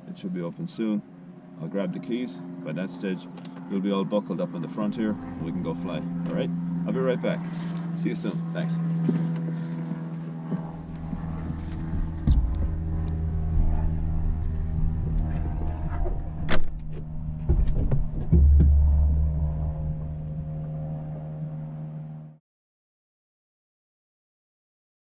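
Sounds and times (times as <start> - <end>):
low mechanical hum: 0.0 - 22.4
knocks and clicks: 16.5 - 19.4.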